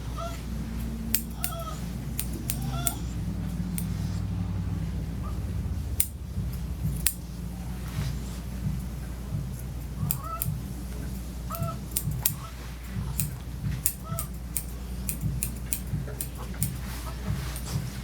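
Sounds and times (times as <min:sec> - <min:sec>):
dog whining: 0:00.0 - 0:03.3
steady low hum: 0:00.0 - 0:18.0.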